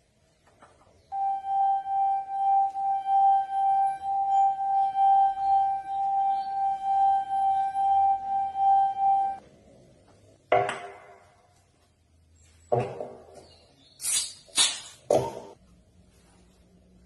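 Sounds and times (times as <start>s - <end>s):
singing glass rim tone: 1.1s - 9.4s.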